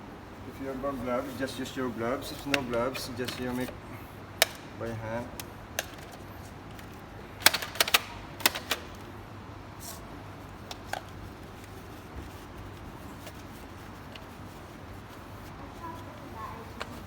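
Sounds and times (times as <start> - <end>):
vacuum parts clicking and knocking: 2.2 - 3.8, 4.4 - 9.1.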